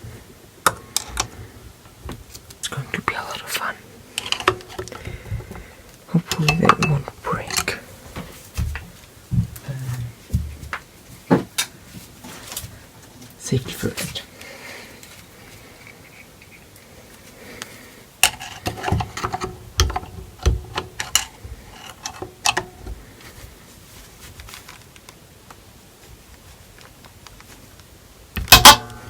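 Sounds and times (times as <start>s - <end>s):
screwdriver clicking and scraping on metal: 18.2s - 22.8s.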